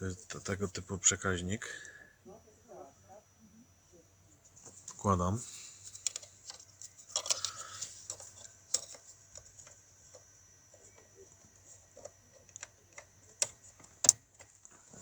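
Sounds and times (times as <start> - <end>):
plastic clicks and knocks: 6.0 - 14.8.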